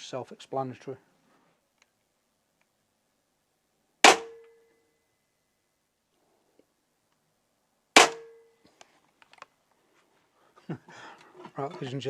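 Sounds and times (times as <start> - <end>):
crossbow bolt striking metal panel: 4.1 - 4.5, 8.0 - 8.4
metallic clang: 4.1 - 4.7.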